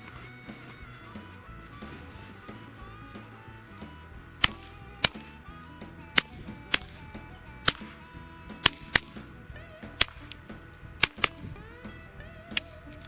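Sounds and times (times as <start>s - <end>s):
faint background music: 0.0s - 13.0s
suppressed pistol shots: 8.6s - 9.2s, 11.0s - 11.5s.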